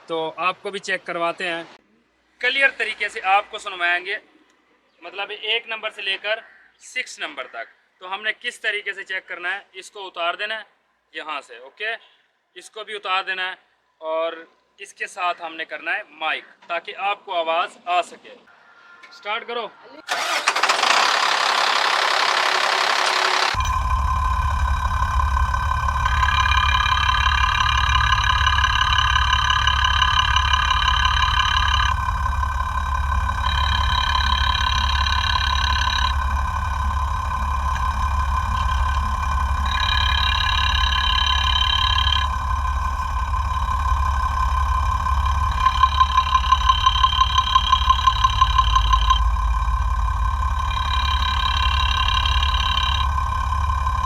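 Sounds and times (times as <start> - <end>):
diesel engine idling: 20.1 - 54.0
rhythmic ticking knock: 22.9 - 54.0.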